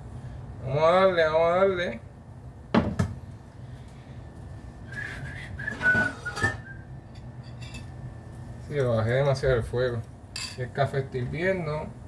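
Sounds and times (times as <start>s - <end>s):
high whistling with hiss: 4.8s - 6.9s.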